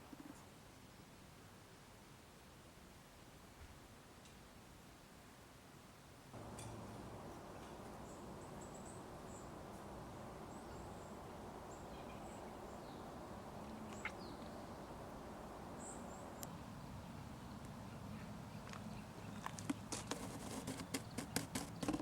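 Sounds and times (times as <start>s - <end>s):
steady low rush: 6.4s - 18.2s.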